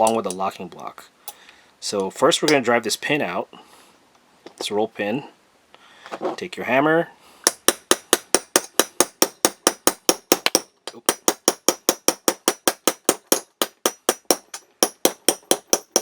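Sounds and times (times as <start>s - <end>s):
hammer tapping metal pin: 7.4s - 16.0s.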